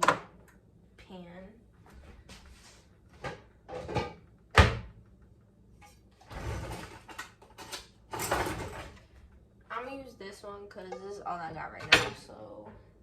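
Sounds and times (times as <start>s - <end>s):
cupboards and cookware rustling: 1.8s - 5.0s, 5.7s - 9.4s, 10.8s - 12.9s
scrape: 2.5s - 2.9s.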